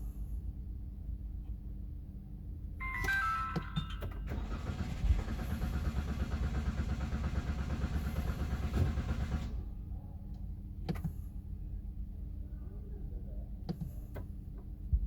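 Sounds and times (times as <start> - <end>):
starter motor cranking engine: 4.2 - 9.7.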